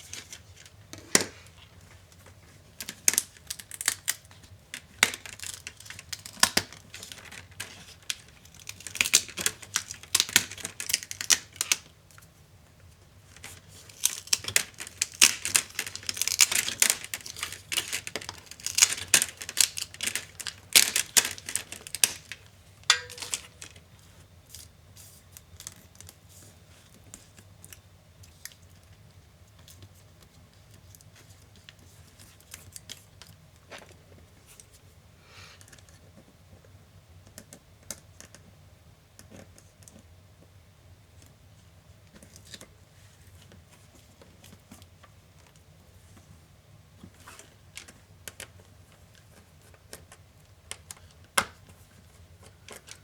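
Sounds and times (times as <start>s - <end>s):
plastic parts clicking and scraping: 13.4s - 23.7s.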